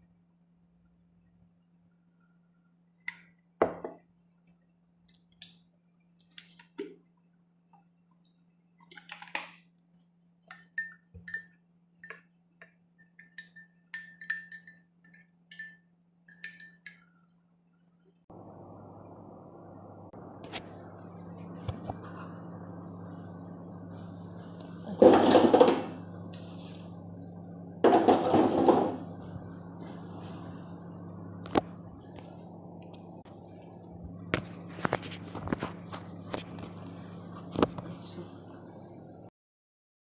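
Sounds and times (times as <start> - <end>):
faint steady hum: 14.2 - 39.3
kitchenware clinking: 24.9 - 26.5, 27.8 - 29.2.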